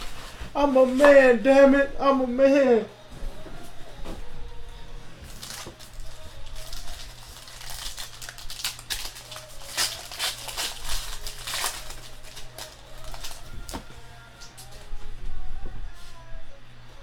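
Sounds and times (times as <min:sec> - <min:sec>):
cards and packaging rustling: 0:05.3 - 0:13.9.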